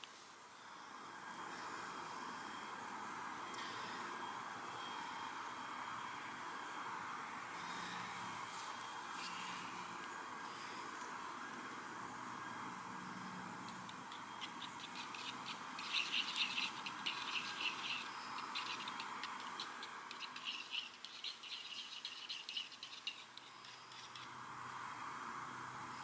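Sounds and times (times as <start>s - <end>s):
steady background hiss: 0.0s - 26.0s
dauber scrubbing on plastic pipe: 13.7s - 24.3s.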